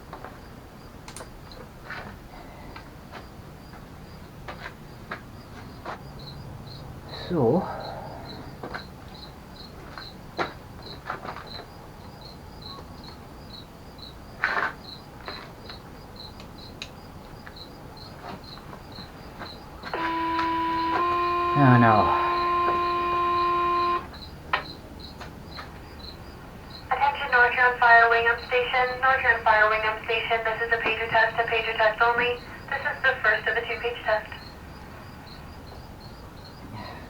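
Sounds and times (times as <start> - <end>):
crickets chirping: 0.0 - 37.0
pager two-tone alert: 20.0 - 24.1.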